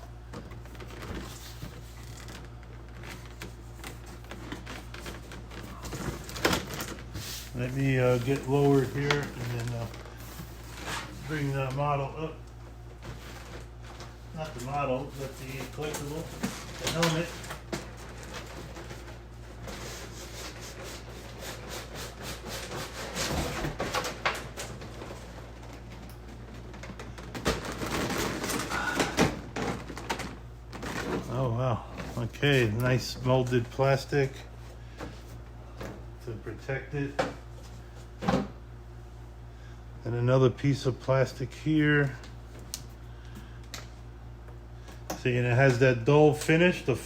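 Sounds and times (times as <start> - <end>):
low electrical hum: 0.0 - 47.0
packaging being handled and opened: 0.6 - 11.8, 13.0 - 19.2
paper and cardboard rustling: 0.6 - 11.9, 13.0 - 31.4.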